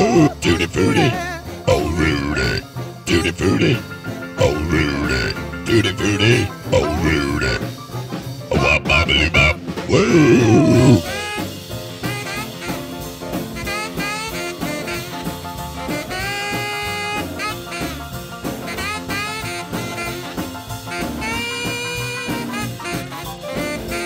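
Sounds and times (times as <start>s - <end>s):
rock and roll band playing: 0.0s - 24.0s
saxophone solo: 10.4s - 24.0s.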